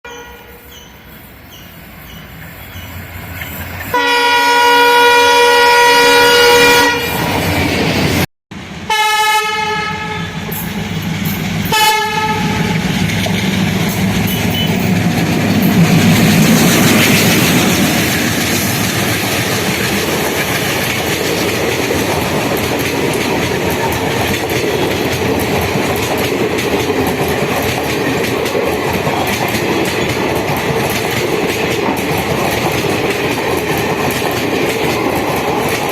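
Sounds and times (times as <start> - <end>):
locomotive horn blasts: 3.9 - 7.2, 8.9 - 10.6, 11.7 - 12.8
train wheels clickety-clack: 10.3 - 35.9.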